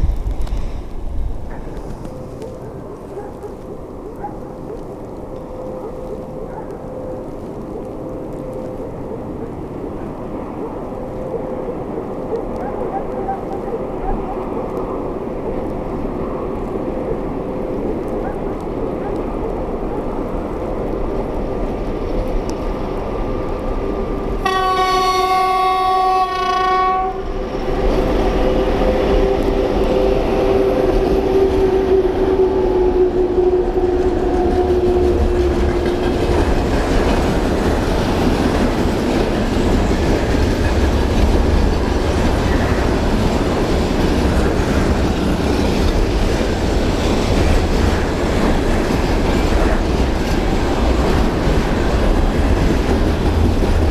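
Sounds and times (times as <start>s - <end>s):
train passing with wheel clatter: 0.0s - 53.9s
locomotive horn blast: 24.4s - 36.5s.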